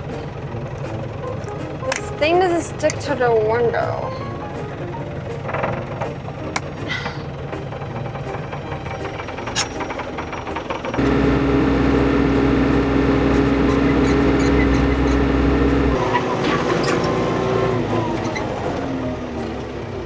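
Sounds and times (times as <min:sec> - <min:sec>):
tractor engine running: 0:11.0 - 0:16.0.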